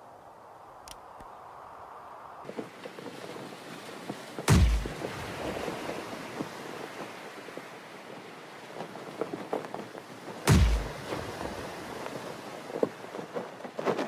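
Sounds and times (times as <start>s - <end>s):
crackling hissing rumble: 0.0s - 13.8s
bomb explosion boom: 4.5s - 5.0s, 10.5s - 11.0s.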